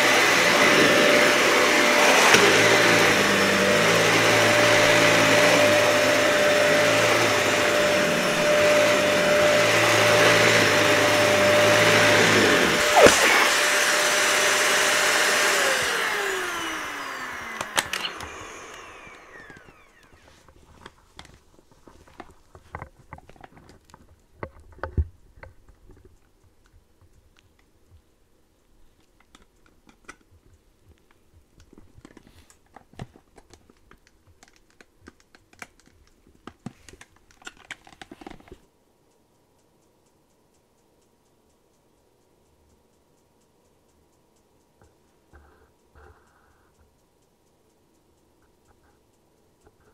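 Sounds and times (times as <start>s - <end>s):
vacuum cleaner motor spinning down: 0.0s - 20.4s.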